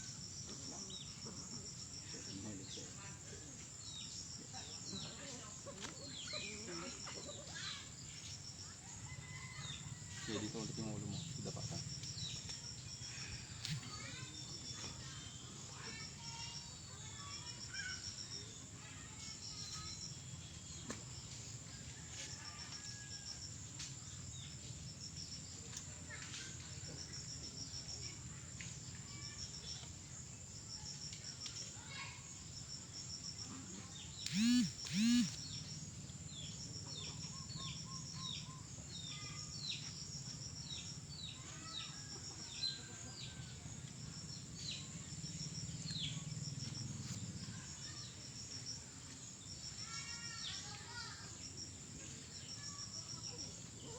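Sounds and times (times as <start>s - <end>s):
crickets chirping: 0.0s - 53.9s
high insect whine: 6.2s - 53.9s
birds chirping: 34.2s - 35.6s.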